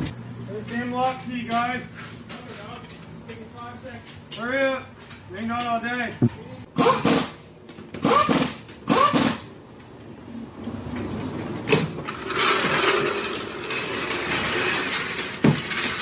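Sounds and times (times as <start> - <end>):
person speaking: 0.5 - 6.7.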